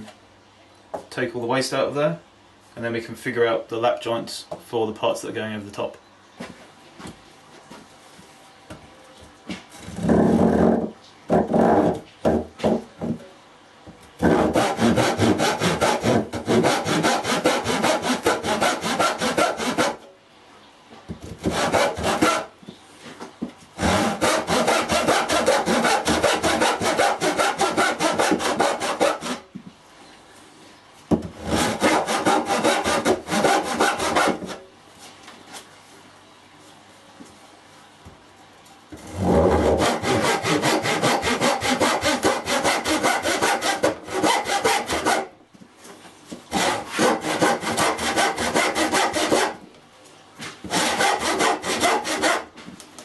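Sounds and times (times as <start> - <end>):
hand saw cutting wood: 14.2 - 20.0, 21.4 - 22.5, 23.8 - 29.4, 31.4 - 34.6, 39.1 - 45.3, 46.5 - 49.6, 50.7 - 52.5.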